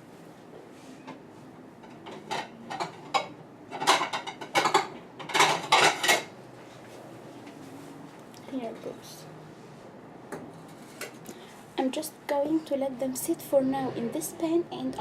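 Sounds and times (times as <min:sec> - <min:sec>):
utensils and dishes clattering: 0:01.8 - 0:06.3.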